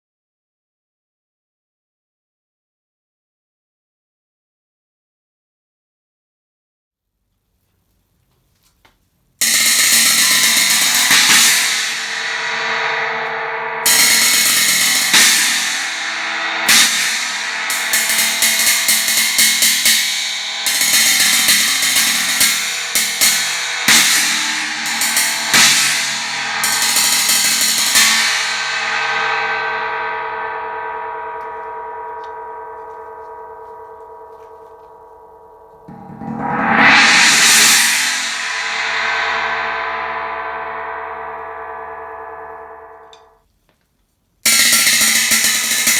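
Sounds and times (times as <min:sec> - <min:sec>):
china cymbal struck and ringing: 0:09.4 - 0:43.3, 0:44.5 - 0:45.9.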